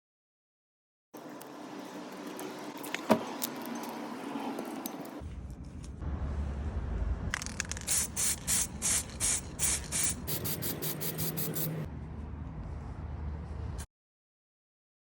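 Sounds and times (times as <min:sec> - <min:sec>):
aerosol spray hissing bursts: 0:07.9 - 0:11.9.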